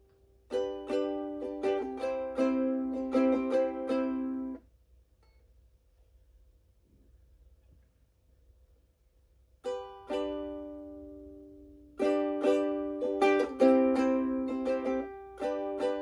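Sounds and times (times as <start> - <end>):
ukulele strumming: 0.3 - 4.6, 9.6 - 16.0.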